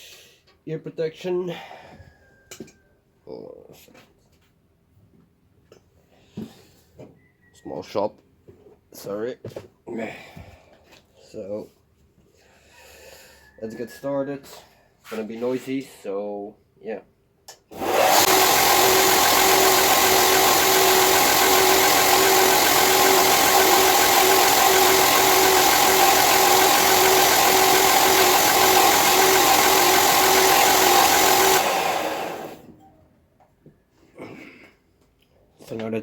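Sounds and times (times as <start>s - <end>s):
belt grinder grinding metal: 17.7s - 32.7s.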